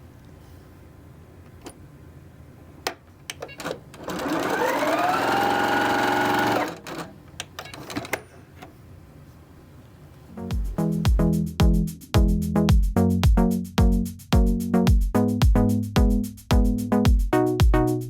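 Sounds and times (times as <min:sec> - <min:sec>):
sewing machine clicks: 0:03.3 - 0:08.2
sewing machine motor whine: 0:03.6 - 0:07.1.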